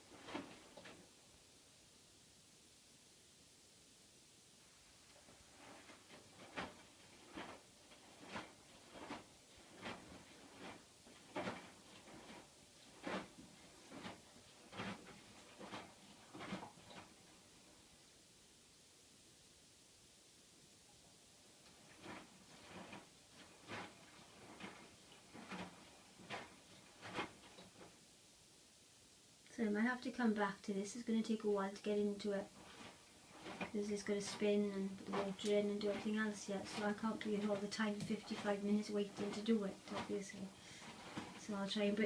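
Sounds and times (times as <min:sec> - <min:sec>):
washing machine drum swishing: 0:00.0 - 0:01.2, 0:04.7 - 0:17.9, 0:21.6 - 0:28.0, 0:30.1 - 0:42.0.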